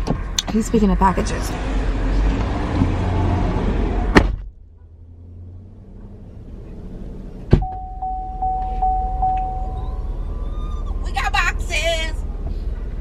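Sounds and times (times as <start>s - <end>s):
car door shutting: 7.4s - 10.0s
electronic chime tone: 7.6s - 10.2s.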